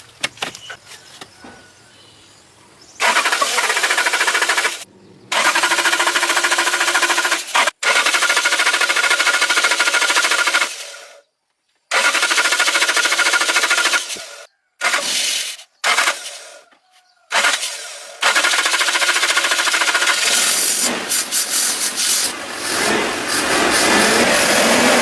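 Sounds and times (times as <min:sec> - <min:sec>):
van engine starter cranking: 0:03.0 - 0:10.9, 0:11.9 - 0:14.2, 0:14.8 - 0:16.6, 0:17.3 - 0:25.0.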